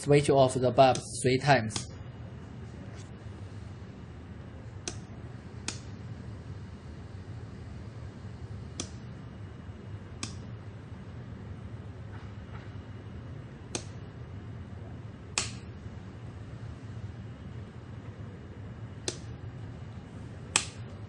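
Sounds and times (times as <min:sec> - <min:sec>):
steady low hum: 0:00.0 - 0:21.0
power switch clicking: 0:04.8 - 0:05.9, 0:08.8 - 0:09.0, 0:10.2 - 0:10.4, 0:13.7 - 0:14.0, 0:15.3 - 0:15.7, 0:19.0 - 0:19.3, 0:20.5 - 0:20.8.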